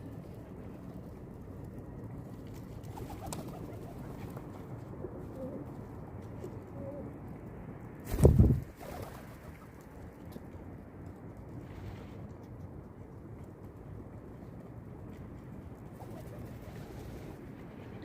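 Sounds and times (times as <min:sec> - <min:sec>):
low background noise: 0:00.0 - 0:18.0
pigeons cooing: 0:05.0 - 0:05.7, 0:06.4 - 0:07.2.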